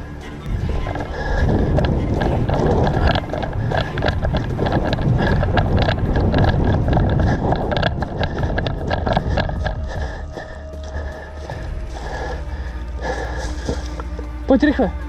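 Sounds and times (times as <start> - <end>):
wind buffeting on microphone: 0.4 - 13.9
sharp clicks and knocks: 0.8 - 10.0.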